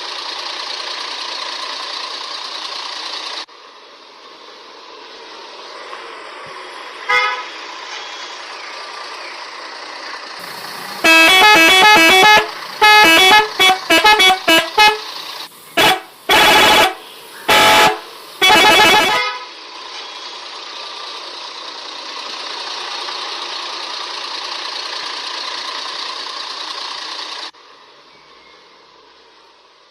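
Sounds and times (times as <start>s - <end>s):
toy electronic horn notes: 11.0s - 15.0s, 15.8s - 19.5s.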